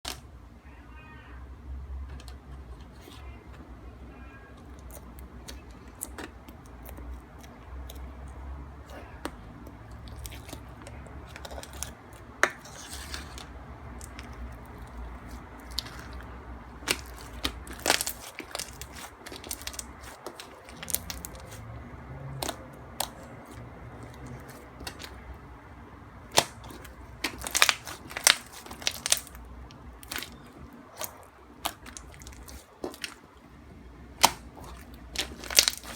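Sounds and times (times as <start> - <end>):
slime crackling clicks and pops: 35.2 - 35.9.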